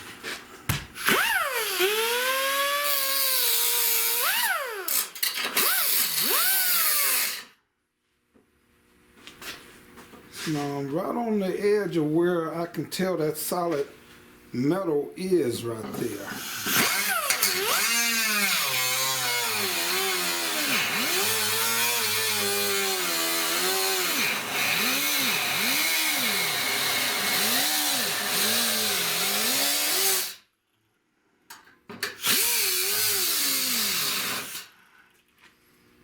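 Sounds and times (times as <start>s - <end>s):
power tool cutting sheet metal: 1.0s - 7.5s, 16.1s - 30.4s, 32.2s - 34.8s.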